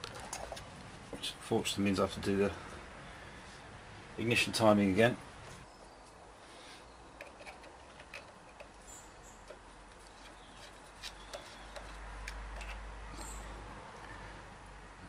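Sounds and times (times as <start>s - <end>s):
hand tools tapping on metal: 9.4s - 13.4s.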